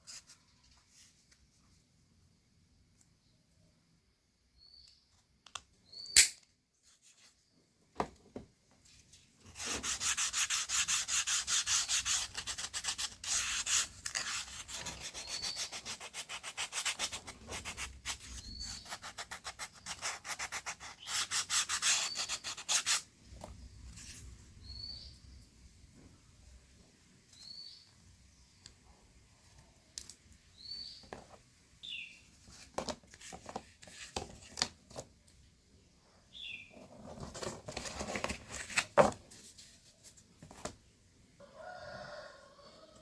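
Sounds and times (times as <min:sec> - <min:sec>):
sharp click: 0:05.5 - 0:06.5
rubbing strokes like sanding: 0:09.6 - 0:23.0.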